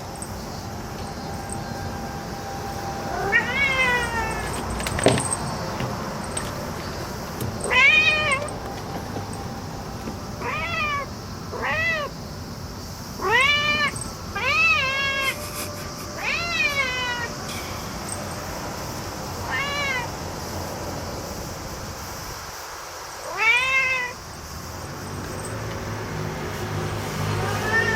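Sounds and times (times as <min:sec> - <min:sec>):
cat meowing: 0:02.8 - 0:05.8, 0:07.5 - 0:08.6, 0:10.4 - 0:12.2, 0:13.2 - 0:17.4, 0:19.4 - 0:20.1, 0:23.3 - 0:24.2, 0:27.3 - 0:27.9.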